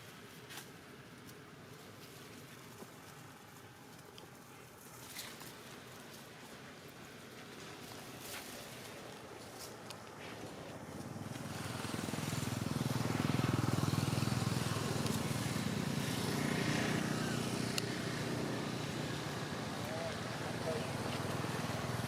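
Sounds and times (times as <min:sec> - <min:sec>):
vehicle engine approaching: 0:10.0 - 0:22.0.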